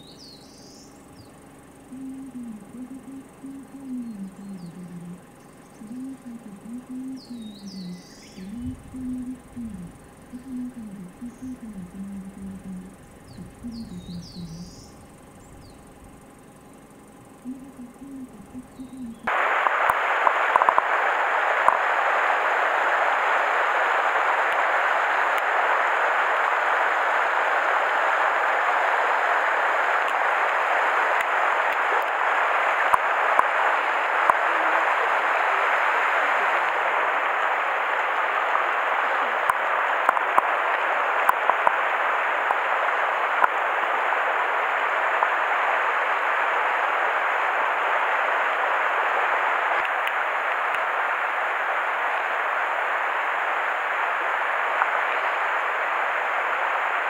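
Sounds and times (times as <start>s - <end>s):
faint clicks: 17.4s - 51.3s.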